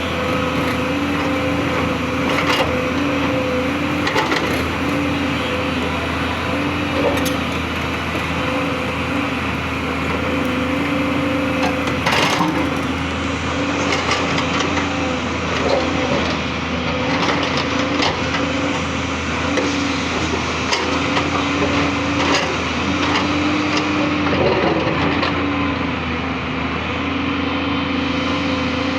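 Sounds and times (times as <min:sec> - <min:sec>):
diesel engine under load: 0:00.0 - 0:28.9.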